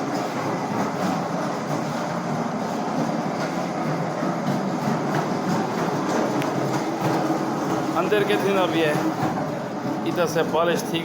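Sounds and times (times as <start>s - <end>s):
floor grinding machine rumble: 0.0s - 11.0s.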